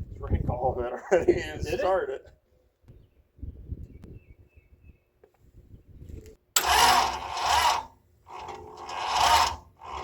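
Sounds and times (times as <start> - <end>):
starter motor cranking engine: 6.6 - 10.0.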